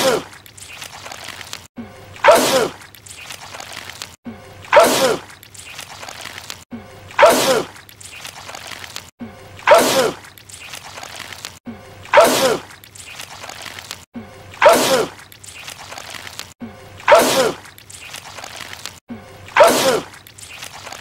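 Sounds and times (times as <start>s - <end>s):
man sneezing loudly: 0.0s - 0.3s, 7.2s - 7.7s, 9.7s - 10.2s, 12.2s - 12.6s, 14.6s - 15.1s, 17.1s - 17.6s, 19.6s - 20.1s.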